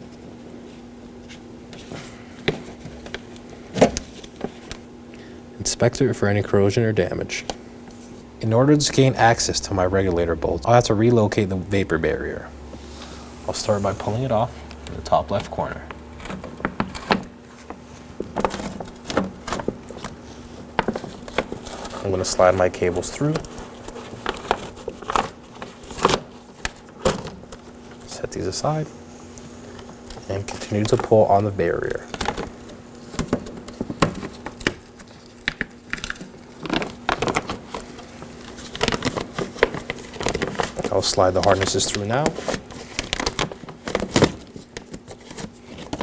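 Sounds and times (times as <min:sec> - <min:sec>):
plastic rustling: 0:07.0 - 0:46.0
plastic sheet peeling and crinkling: 0:07.4 - 0:46.0.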